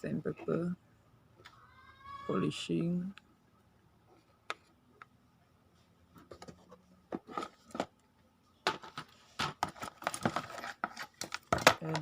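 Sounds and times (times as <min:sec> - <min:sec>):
small bits rattling in plastic case: 0:09.4 - 0:12.0.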